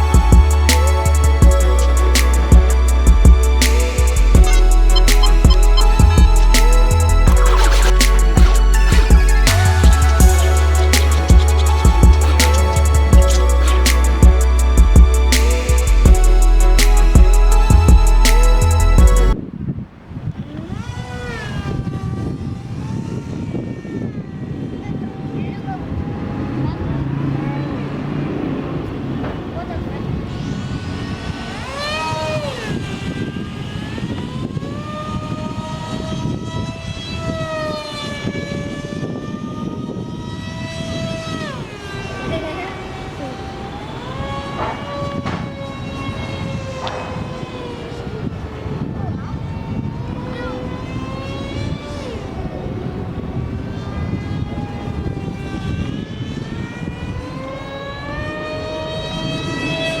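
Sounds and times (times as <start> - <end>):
low rumble: 0.0 - 19.6
electric motor and propeller whining: 0.0 - 60.0.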